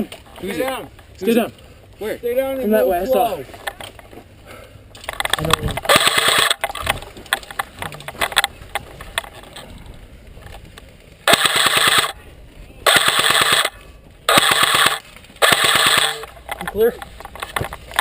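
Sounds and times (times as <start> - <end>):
airsoft gun firing bursts: 5.9 - 6.6, 11.3 - 12.2, 12.8 - 16.3.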